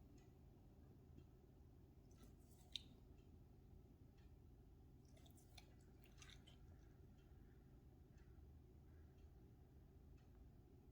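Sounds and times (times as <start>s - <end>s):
faint low hum: 0.0s - 10.9s
soft wet clicks: 2.1s - 3.4s, 4.1s - 8.4s.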